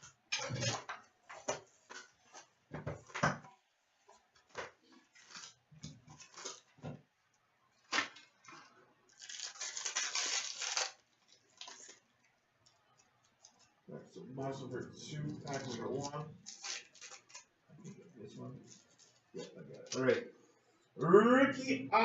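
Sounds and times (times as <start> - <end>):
wrapping tearing: 5.1 - 6.8, 7.8 - 13.7, 15.3 - 17.5, 18.7 - 20.1.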